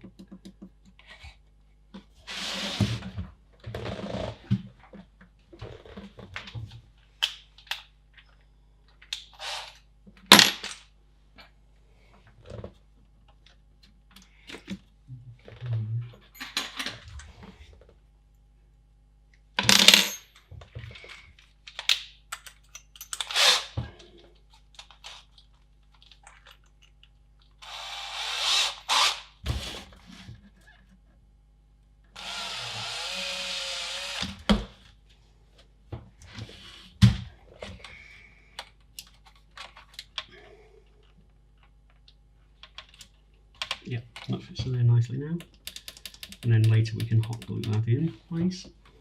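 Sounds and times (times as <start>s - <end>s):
drilling into plastic: 2.3s - 3.1s, 23.2s - 23.8s, 27.6s - 29.9s, 32.2s - 34.5s.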